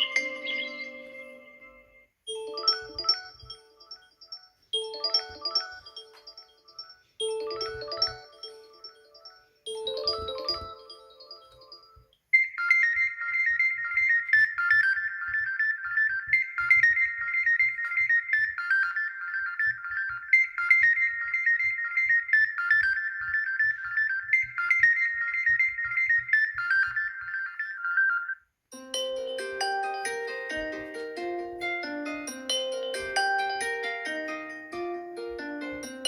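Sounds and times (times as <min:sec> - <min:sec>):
lower-pitched ringtone: 0:00.0 - 0:14.1, 0:26.7 - 0:36.0
high-pitched electronic ringtone: 0:00.0 - 0:36.0.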